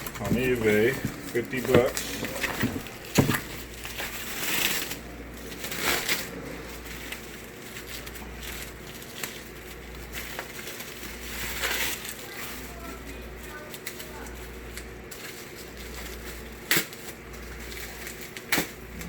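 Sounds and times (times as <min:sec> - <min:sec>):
scraping and shuffling: 0:00.0 - 0:08.7.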